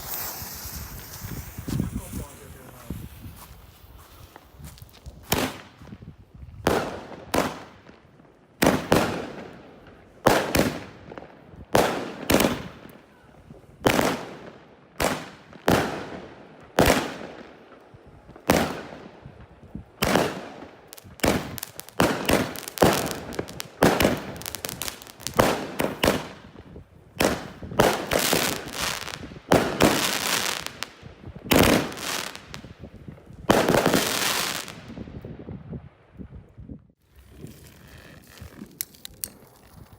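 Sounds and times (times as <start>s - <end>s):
fireworks bangs: 0.0s - 6.0s, 8.6s - 12.9s, 13.9s - 35.0s.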